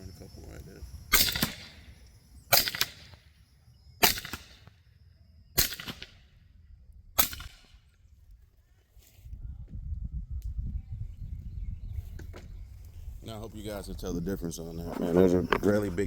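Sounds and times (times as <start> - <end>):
suppressed air rifle shots: 1.1 - 1.9, 2.5 - 3.2, 4.0 - 4.8, 5.6 - 6.4, 7.2 - 7.9.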